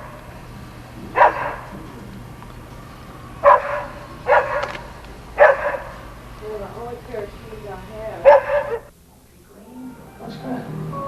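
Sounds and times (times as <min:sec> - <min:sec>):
dog barking: 0:01.1 - 0:01.8, 0:03.4 - 0:06.2, 0:08.2 - 0:08.9.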